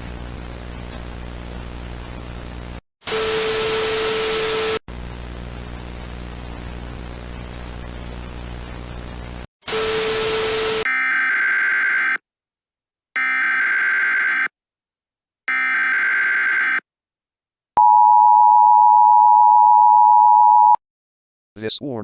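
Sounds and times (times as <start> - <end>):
harsh static bursts with tone: 13.2 - 14.5, 15.5 - 16.8.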